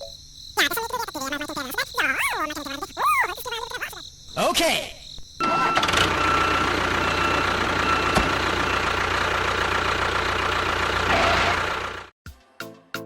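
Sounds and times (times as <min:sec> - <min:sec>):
small motor whining: 0:10.8 - 0:11.9.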